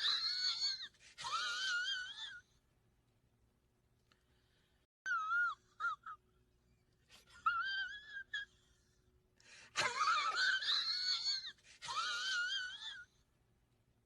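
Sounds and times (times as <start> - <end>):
wheezy squeals holding in cough: 0.0 - 2.4, 5.1 - 6.2, 7.1 - 13.1.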